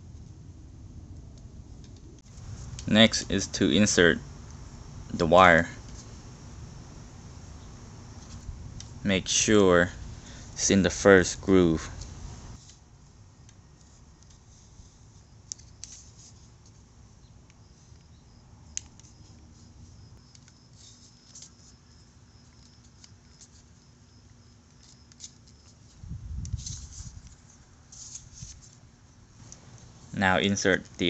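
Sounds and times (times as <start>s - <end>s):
handling rustle: 11.9s - 16.9s, 17.6s - 31.0s.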